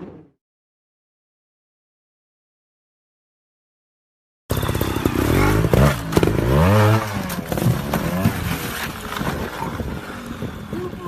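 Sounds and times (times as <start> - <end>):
motorcycle engine revving: 4.5 - 11.0.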